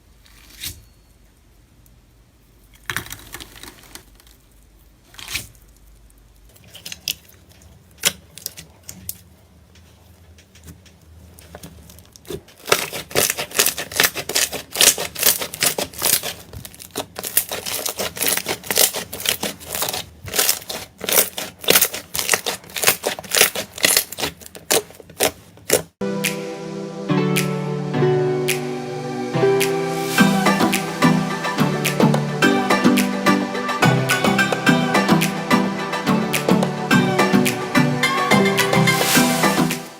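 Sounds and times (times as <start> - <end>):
slime crackling and popping: 12.2 - 25.9.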